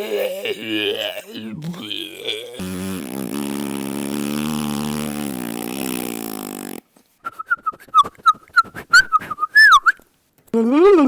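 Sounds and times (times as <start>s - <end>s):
person droning vocal sound: 0.0s - 6.8s
whistled chirps with clicks: 7.2s - 10.0s.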